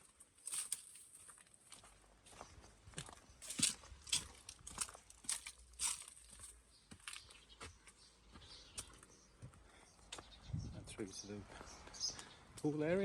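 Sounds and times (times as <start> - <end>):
crackly footsteps: 0.0 - 10.4.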